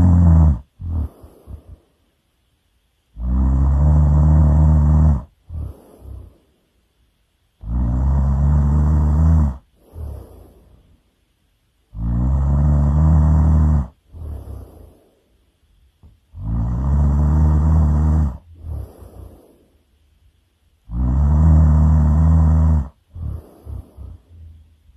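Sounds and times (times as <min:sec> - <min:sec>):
person snoring loudly: 0:00.0 - 0:01.8, 0:03.1 - 0:06.4, 0:07.6 - 0:10.8, 0:11.9 - 0:15.0, 0:16.3 - 0:19.6, 0:20.8 - 0:24.6.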